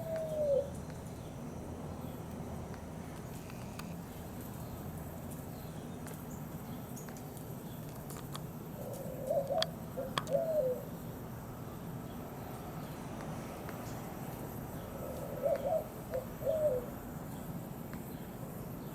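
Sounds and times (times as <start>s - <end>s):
bird cooing: 0.0s - 0.8s, 8.8s - 11.2s, 14.7s - 17.0s.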